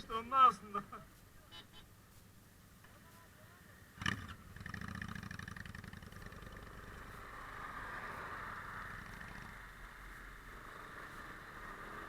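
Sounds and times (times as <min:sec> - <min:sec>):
motorcycle engine rumbling: 0:02.8 - 0:12.0
steady rush of noise: 0:06.0 - 0:12.0.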